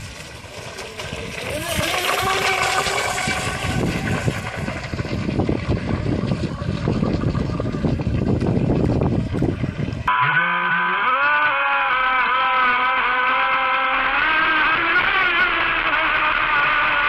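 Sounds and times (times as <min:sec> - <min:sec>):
wind and water noise: 0:00.0 - 0:17.0.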